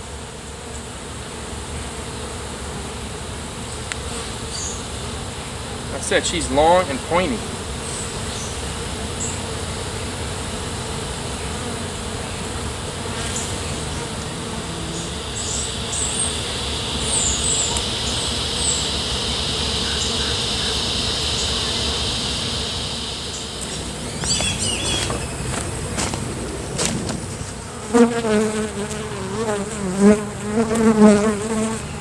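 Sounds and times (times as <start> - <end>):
bees buzzing: 0.0 - 32.0
higher steady drone: 5.9 - 32.0.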